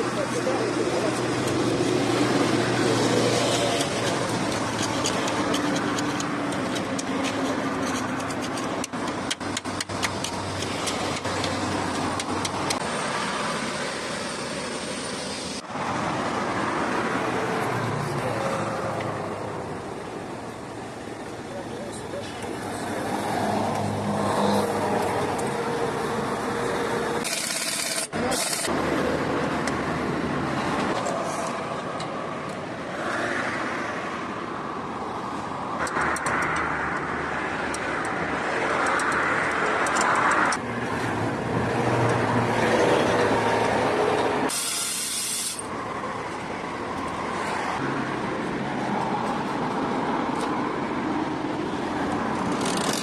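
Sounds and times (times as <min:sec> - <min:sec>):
vehicle engine rumble: 0:00.0 - 0:27.3
road hiss: 0:10.1 - 0:16.7, 0:43.1 - 0:46.5.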